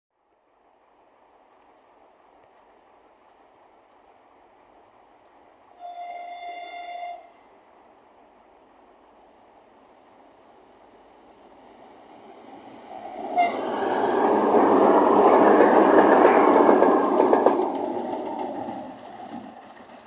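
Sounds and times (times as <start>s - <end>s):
diesel train passing: 0.6s - 20.0s
wheels clattering over rail joints: 12.6s - 20.0s.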